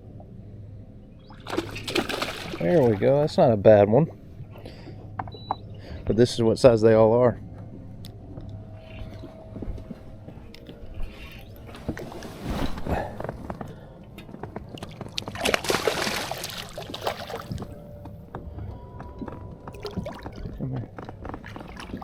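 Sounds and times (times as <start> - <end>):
water sloshing and splashing: 1.3 - 3.4, 14.7 - 17.8, 19.7 - 20.8, 21.4 - 22.0.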